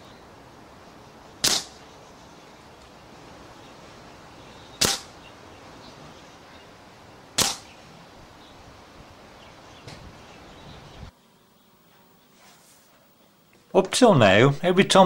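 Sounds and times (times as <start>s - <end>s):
air rifle shots: 1.4s - 1.8s, 4.8s - 5.2s, 7.4s - 7.8s.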